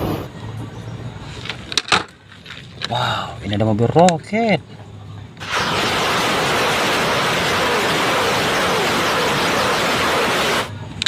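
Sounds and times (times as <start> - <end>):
loud steady rushing hiss: 5.4 - 11.0.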